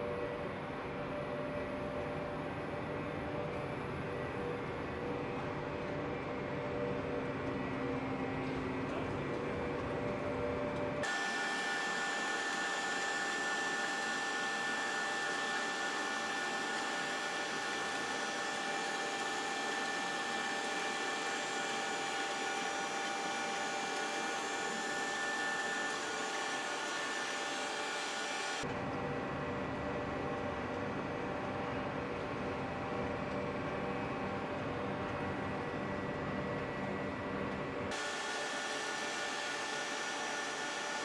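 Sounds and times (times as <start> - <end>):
boring mill running steadily: 0.0 - 41.0
machine whining tones: 8.8 - 28.6, 37.9 - 41.0.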